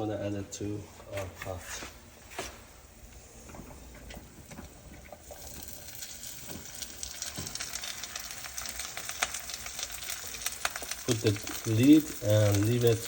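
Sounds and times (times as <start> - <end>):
rice sizzling in oil: 5.1 - 13.0.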